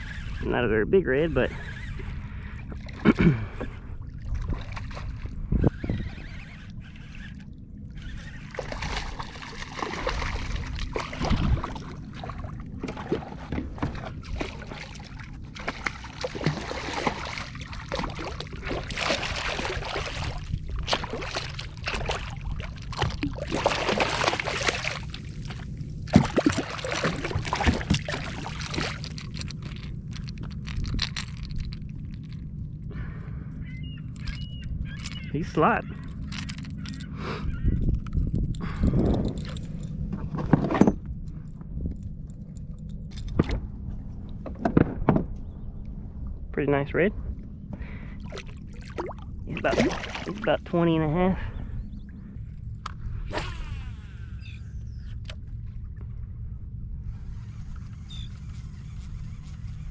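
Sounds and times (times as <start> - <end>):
water splashing against kayak: 8.2 - 32.3, 48.1 - 50.7.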